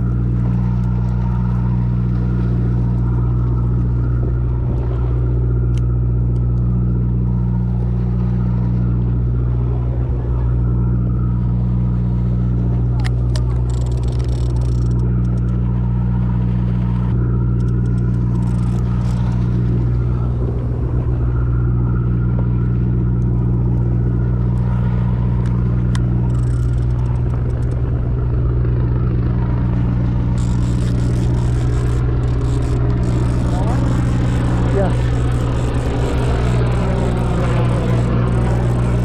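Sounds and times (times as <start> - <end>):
boat engine droning: 0.0 - 39.0
light clatter: 12.9 - 15.6, 25.3 - 28.0.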